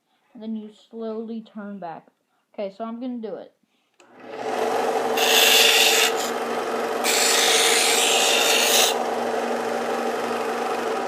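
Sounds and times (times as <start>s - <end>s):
belt sander humming: 4.0s - 11.0s
wood grinding on sander belt: 4.0s - 11.0s.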